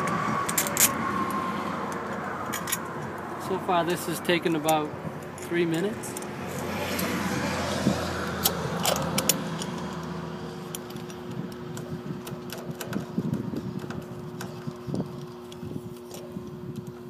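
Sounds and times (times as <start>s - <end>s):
screws and screwdriver clinking: 0.0s - 1.0s, 2.5s - 2.9s
broad rushing noise: 0.0s - 12.1s.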